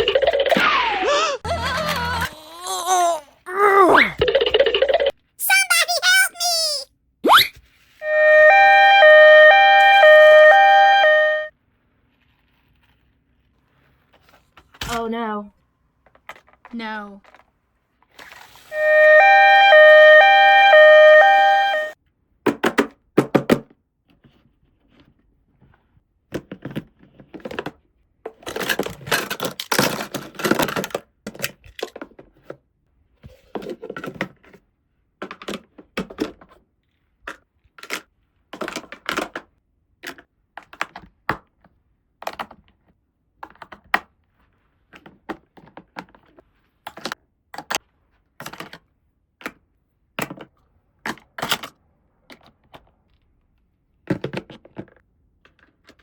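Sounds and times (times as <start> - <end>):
toy electronic two-note tone: 8.0 - 11.5, 18.8 - 22.0.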